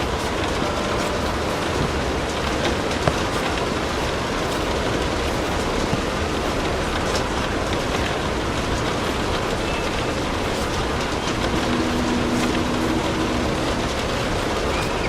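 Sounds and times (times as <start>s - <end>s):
fireplace fire crackling: 0.0s - 15.0s
steady rain: 0.0s - 15.0s
faint low two-note hum: 11.0s - 15.0s.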